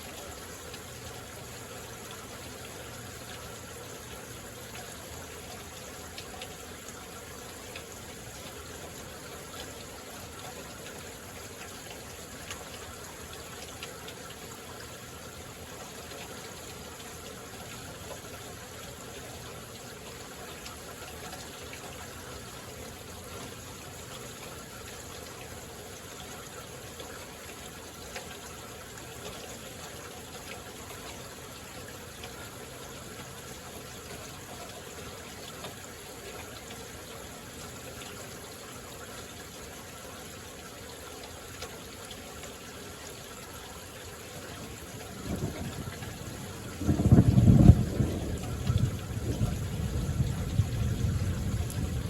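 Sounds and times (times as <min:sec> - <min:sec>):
rain falling: 0:00.0 - 0:52.0
running water: 0:00.0 - 0:52.0
thunder rumbling: 0:45.1 - 0:52.0.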